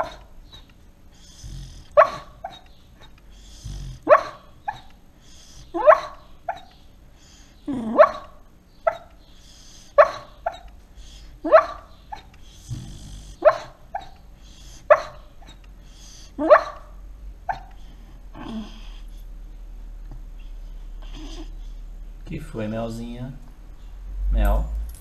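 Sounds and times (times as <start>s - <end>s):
sleeping dog barking: 0.0s - 6.9s, 7.6s - 19.1s.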